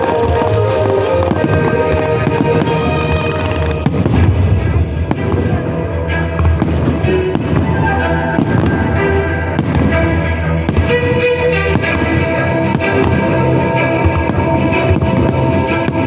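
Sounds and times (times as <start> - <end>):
fireworks bangs and crackles: 0.0 - 16.0
loud music with steady beat: 8.4 - 16.0.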